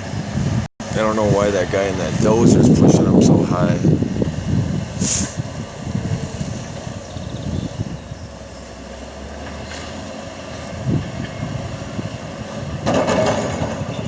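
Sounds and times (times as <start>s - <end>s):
wind buffeting microphone: 0.0s - 8.8s, 10.0s - 14.0s
loud rush of noise: 0.0s - 9.3s
heavy diesel engines running: 0.0s - 14.0s.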